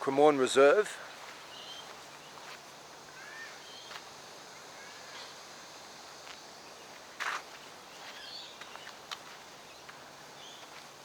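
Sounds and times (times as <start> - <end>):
soft footsteps: 1.1 - 2.8, 6.2 - 11.0
faint bird chirps: 1.5 - 2.4, 3.1 - 3.9, 4.5 - 5.4, 7.9 - 9.0, 9.7 - 10.7.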